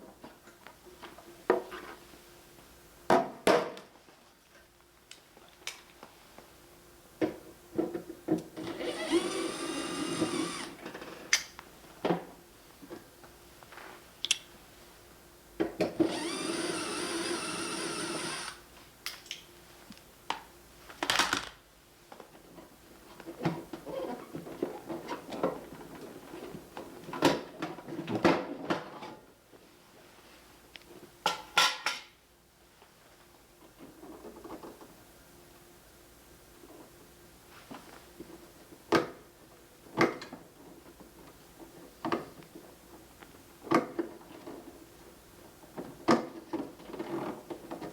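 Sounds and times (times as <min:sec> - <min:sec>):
electric screwdriver whirring: 0:08.7 - 0:10.8, 0:16.0 - 0:18.6.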